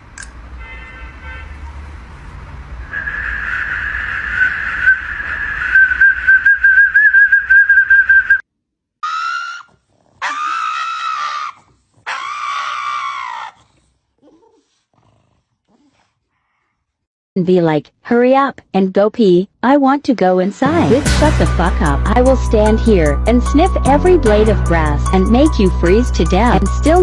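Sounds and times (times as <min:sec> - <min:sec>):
dog howling: 0:09.0 - 0:13.6
dog whining: 0:09.0 - 0:14.7.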